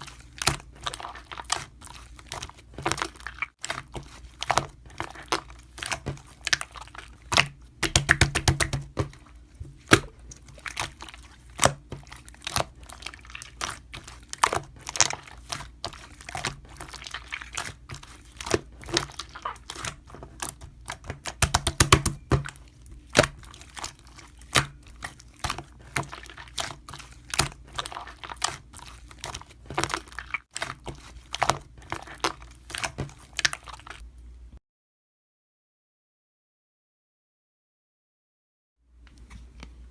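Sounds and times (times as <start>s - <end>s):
slime clicking and popping: 7.3s - 9.1s, 18.4s - 23.4s.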